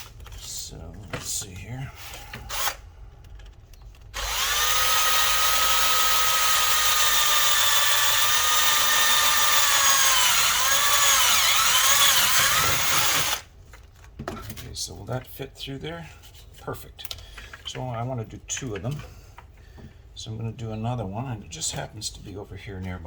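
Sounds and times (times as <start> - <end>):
electric drill boring plastic: 4.2 - 13.5.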